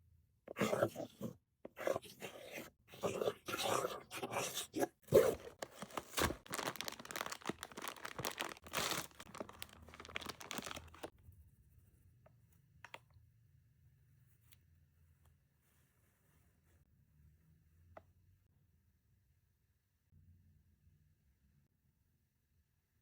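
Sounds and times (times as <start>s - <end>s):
packaging torn and crinkled: 5.1s - 11.1s.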